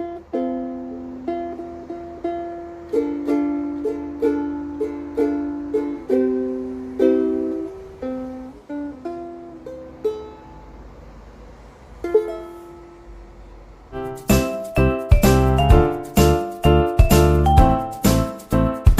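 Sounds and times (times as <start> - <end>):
ukulele plucked melody: 0.0 - 11.2, 11.9 - 18.9
bright chiming jingle: 14.2 - 18.2.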